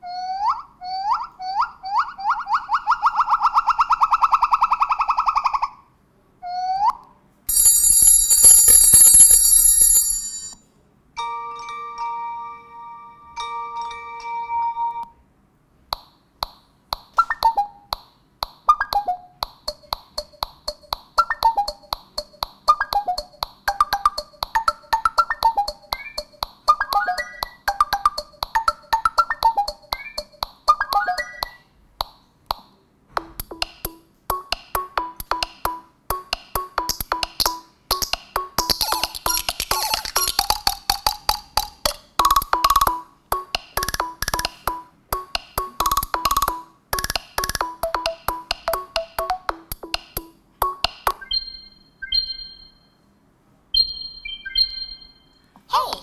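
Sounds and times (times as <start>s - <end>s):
ringtone with electronic beat: 7.5s - 10.6s, 18.6s - 31.8s, 33.2s - 53.0s, 53.8s - 55.5s
melody of struck notes: 42.2s - 51.5s.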